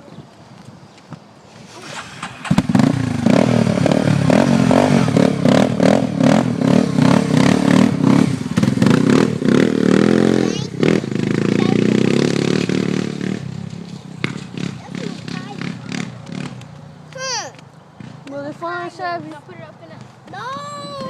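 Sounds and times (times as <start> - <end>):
quad bike engine revving: 1.6 - 17.3.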